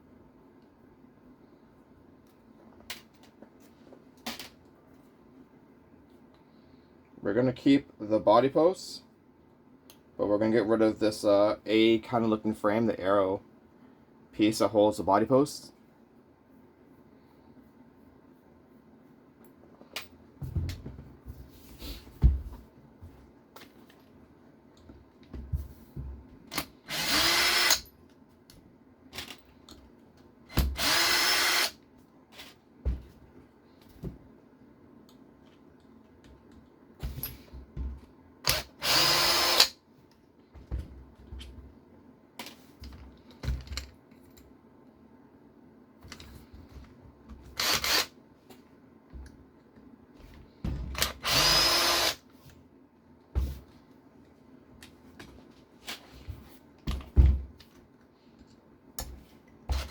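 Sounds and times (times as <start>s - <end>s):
electric screwdriver whining: 26.9s - 27.8s, 30.8s - 31.7s, 38.5s - 39.7s, 47.6s - 48.1s, 51.0s - 52.2s.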